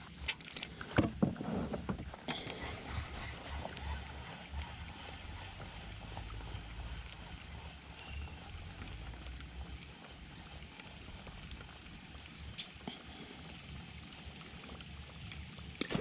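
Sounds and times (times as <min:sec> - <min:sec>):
water noise: 0:00.0 - 0:16.0
faint small ticks: 0:06.9 - 0:16.0.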